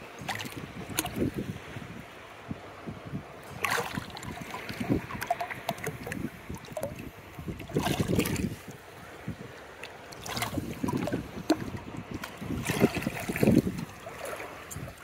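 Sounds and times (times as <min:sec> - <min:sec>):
beach water lapping: 0:00.0 - 0:15.0
wind buffeting microphone: 0:00.0 - 0:15.0
water splash: 0:00.2 - 0:01.5, 0:03.4 - 0:08.7, 0:09.8 - 0:15.0.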